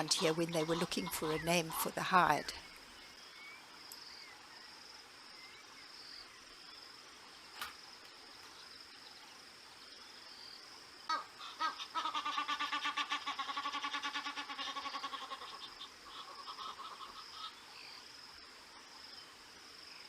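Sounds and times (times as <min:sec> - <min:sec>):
bird calls: 0:00.0 - 0:04.6, 0:11.1 - 0:18.0
insects droning: 0:00.0 - 0:20.0.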